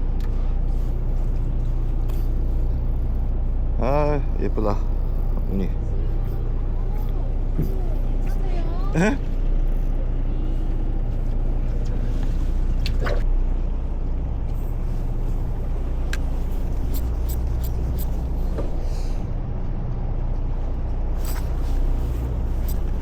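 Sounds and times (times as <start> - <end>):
boat engine droning: 0.0 - 23.0.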